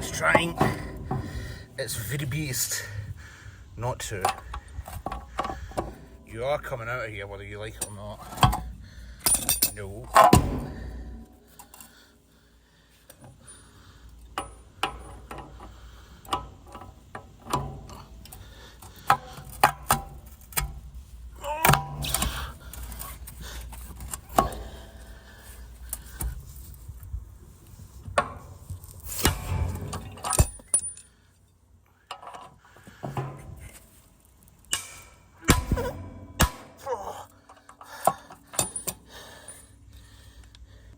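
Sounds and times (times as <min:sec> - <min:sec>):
metal tools clinking on bolt: 0:00.0 - 0:01.6, 0:07.4 - 0:12.0, 0:13.1 - 0:20.8, 0:29.2 - 0:31.2, 0:32.0 - 0:33.8, 0:37.2 - 0:39.8.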